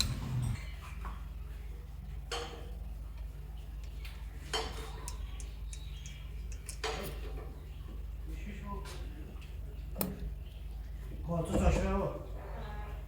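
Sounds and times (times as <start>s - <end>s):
steady low hum: 0.0s - 1.4s.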